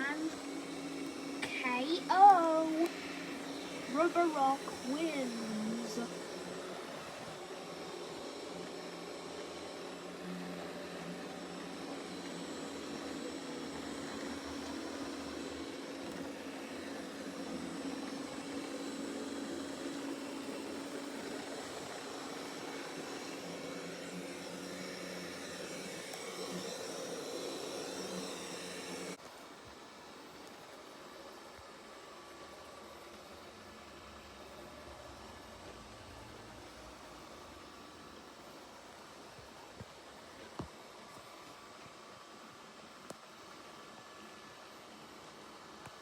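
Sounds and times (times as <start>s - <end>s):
robot vacuum whirring: 0.0s - 29.6s.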